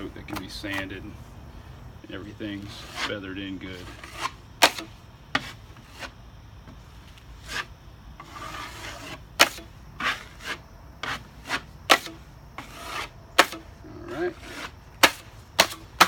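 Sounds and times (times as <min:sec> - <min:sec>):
drywall knife scraping a wall: 0:02.6 - 0:06.2, 0:07.4 - 0:16.0.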